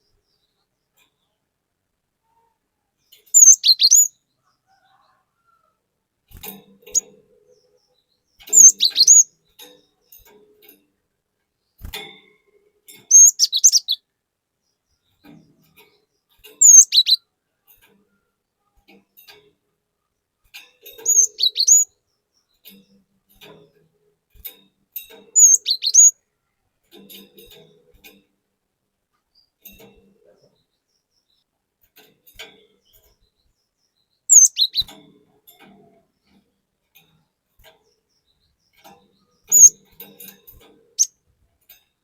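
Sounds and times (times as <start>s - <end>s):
bird whistling song: 3.3s - 4.2s, 8.5s - 9.3s, 13.1s - 14.0s, 16.6s - 17.2s, 21.0s - 21.9s, 25.4s - 26.1s, 34.3s - 34.9s, 39.4s - 39.8s.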